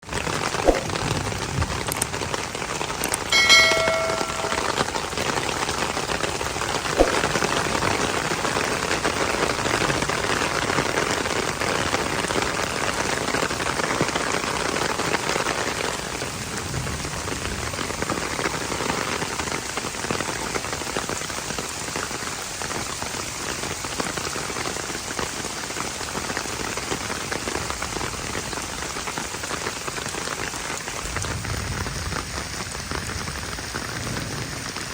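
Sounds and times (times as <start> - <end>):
heavy rain falling: 0.0 - 3.6, 4.5 - 34.9
brief ringing tone: 3.3 - 4.8.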